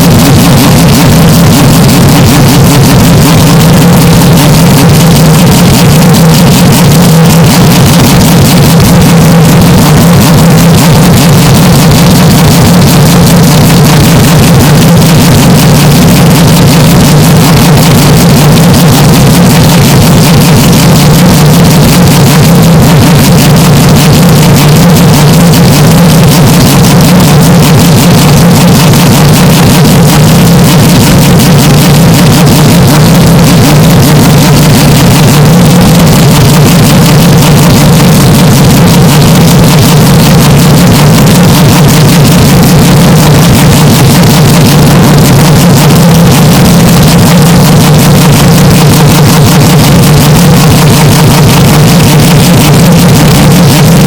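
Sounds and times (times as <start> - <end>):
distorted race car engine drone: 0.0 - 54.0.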